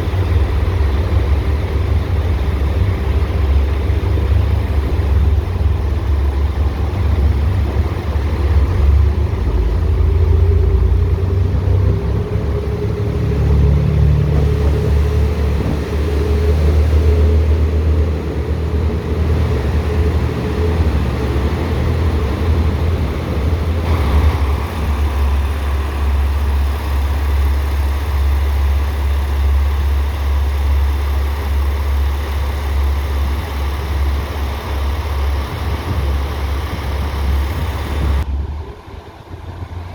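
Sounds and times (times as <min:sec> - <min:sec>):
train rumbling: 0:00.0 - 0:39.9.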